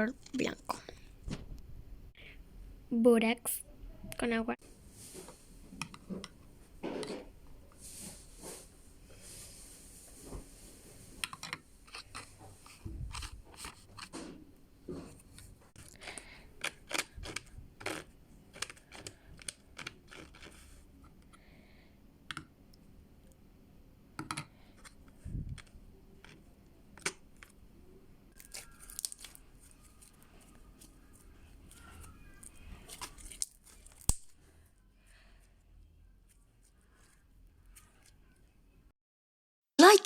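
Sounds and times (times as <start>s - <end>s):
sticky slime clicking and crackling: 28.4s - 30.2s.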